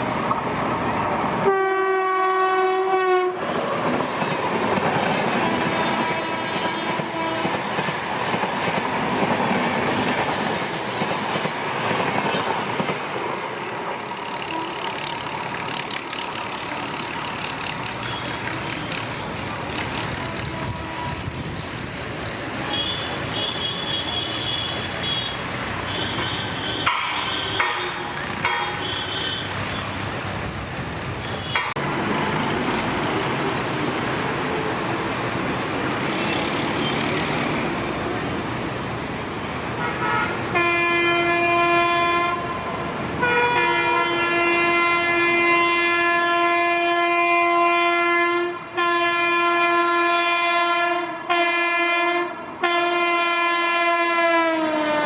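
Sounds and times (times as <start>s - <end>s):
locomotive air horn blasts: 1.4s - 3.4s, 5.4s - 7.6s, 20.1s - 21.4s, 22.7s - 28.0s, 39.8s - 55.0s
train wheels rumbling on rails: 2.6s - 46.9s.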